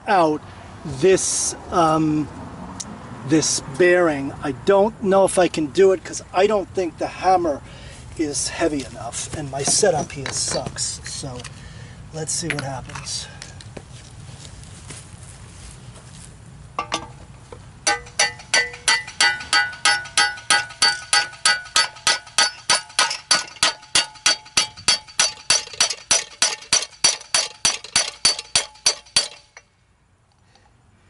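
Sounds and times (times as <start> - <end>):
hammer striking metal: 17.8 - 29.7.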